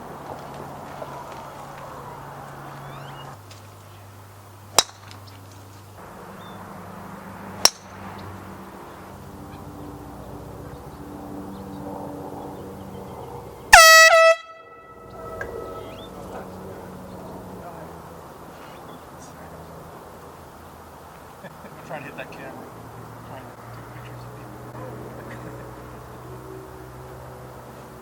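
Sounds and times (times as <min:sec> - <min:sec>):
sharp cracks: 0:04.8 - 0:05.2, 0:07.6 - 0:08.0
air horn blast: 0:13.7 - 0:16.0.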